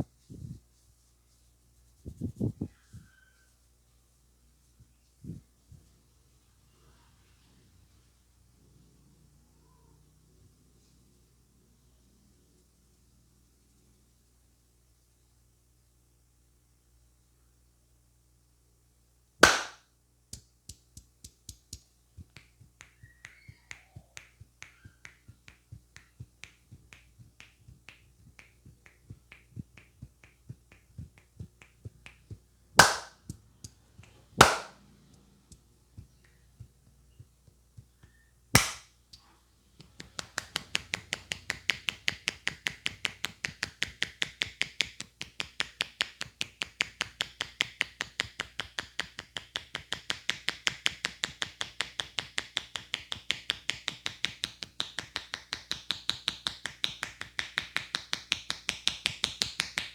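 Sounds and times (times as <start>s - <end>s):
sharp hand strikes: 19.4s - 19.8s, 32.8s - 33.8s, 34.4s - 34.8s, 38.6s - 38.9s
fast chopping hand strikes: 19.4s - 22.4s, 25.4s - 33.8s, 34.4s - 34.8s, 38.6s - 38.9s.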